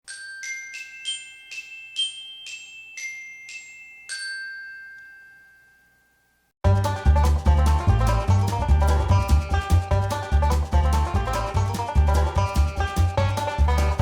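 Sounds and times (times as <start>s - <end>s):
bell-like mallet notes: 0.1s - 6.2s.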